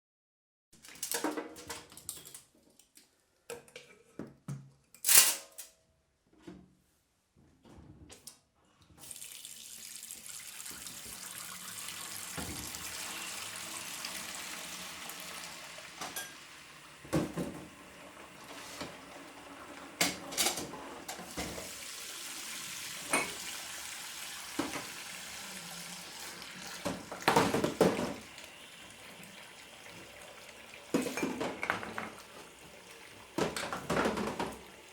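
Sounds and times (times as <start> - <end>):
tap running into sink: 10.6 - 11.4, 12.0 - 14.3, 17.0 - 17.8, 19.8 - 21.8, 22.9 - 23.6, 24.5 - 25.1, 26.2 - 28.6, 30.9 - 32.6, 33.4 - 34.8
dishes clattering: 16.0 - 16.4, 20.0 - 21.7, 23.0 - 23.5, 26.8 - 28.2, 30.9 - 32.2, 33.4 - 34.6
dishes clinking: 16.0 - 16.4, 23.0 - 23.5, 30.9 - 32.2.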